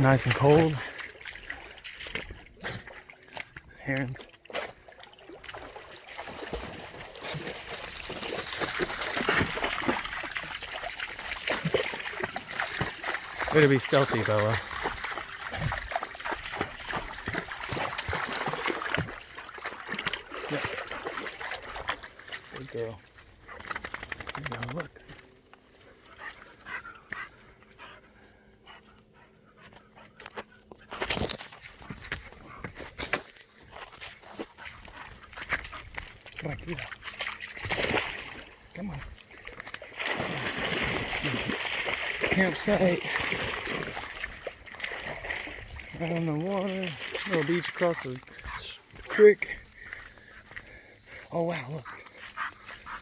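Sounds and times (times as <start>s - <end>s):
water splashing from wading: 0.0s - 3.5s, 4.2s - 24.9s, 33.0s - 51.2s
dog panting: 25.8s - 31.0s, 49.6s - 53.0s.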